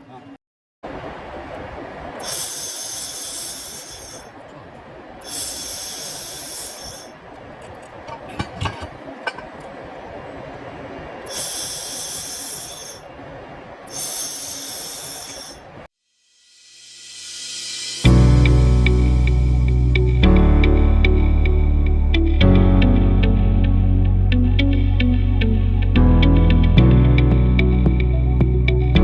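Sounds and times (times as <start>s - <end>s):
background machine noise: 0.9s - 15.9s
laser welder hissing bursts: 2.2s - 4.3s, 5.2s - 7.2s, 11.3s - 13.0s, 13.9s - 15.7s.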